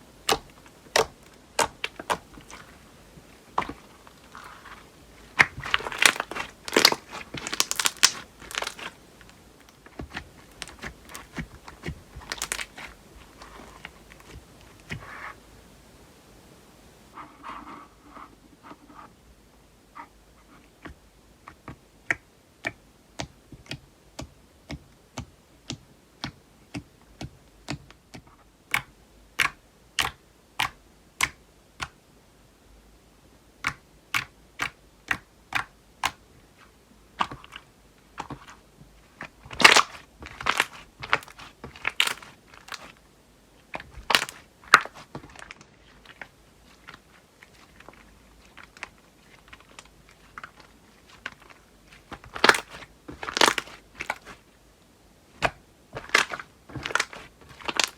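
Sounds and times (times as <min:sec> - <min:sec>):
slime squished by hand: 0:00.2 - 0:02.8, 0:03.5 - 0:15.3, 0:39.3 - 0:43.0, 0:43.7 - 0:54.4, 0:55.4 - 0:57.9.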